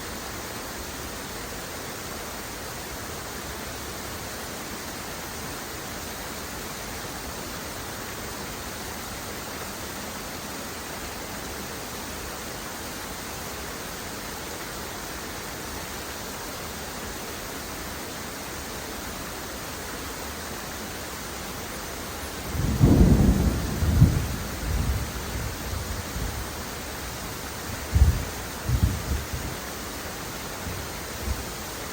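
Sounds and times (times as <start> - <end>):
heavy rain hissing: 0.0 - 31.9
low rumble of thunder: 22.4 - 29.6.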